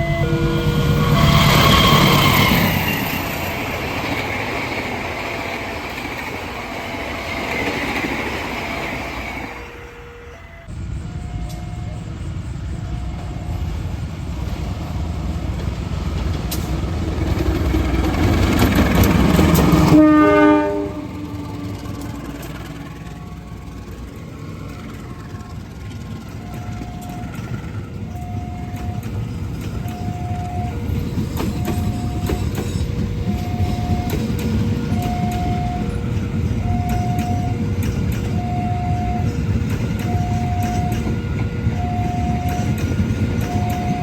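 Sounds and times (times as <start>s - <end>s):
train horn blast: 0.0s - 2.9s, 9.2s - 12.1s, 19.1s - 23.9s
train wheel clatter: 0.0s - 9.6s, 11.2s - 44.0s
train rumble: 0.0s - 44.0s.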